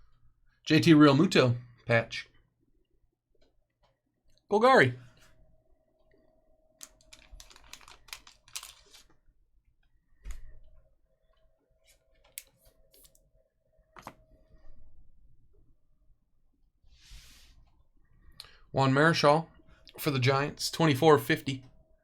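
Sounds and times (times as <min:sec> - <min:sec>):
trading cards clicking and rustling: 0:06.8 - 0:09.1.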